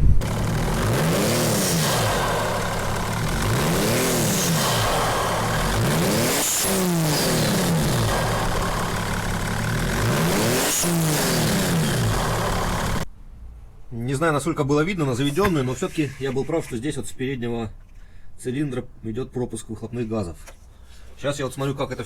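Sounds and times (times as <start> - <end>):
diesel engine revving: 0.0 - 13.1.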